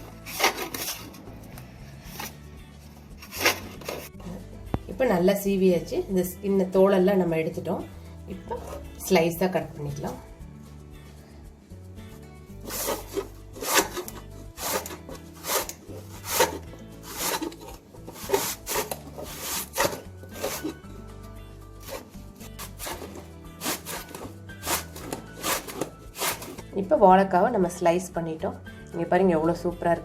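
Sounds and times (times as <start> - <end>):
background music: 0.0 - 30.0
knife slicing banana: 12.6 - 20.8, 21.8 - 26.6.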